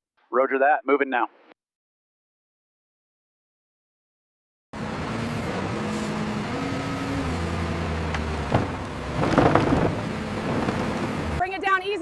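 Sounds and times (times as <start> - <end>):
heavy machinery engine humming: 4.8 - 11.8.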